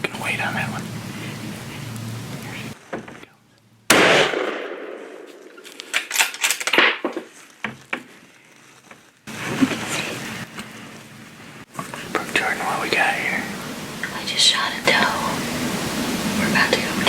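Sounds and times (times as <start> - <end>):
rifle shot: 3.9 - 5.6.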